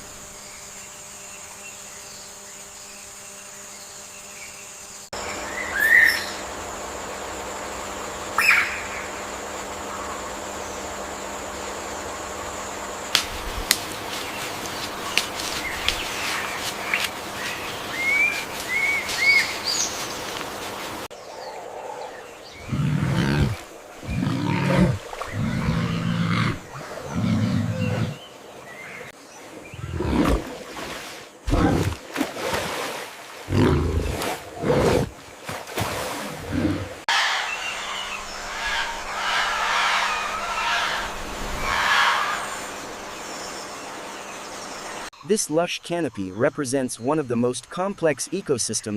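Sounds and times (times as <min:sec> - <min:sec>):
large animal roaring: 0:21.5 - 0:28.2, 0:33.5 - 0:35.1.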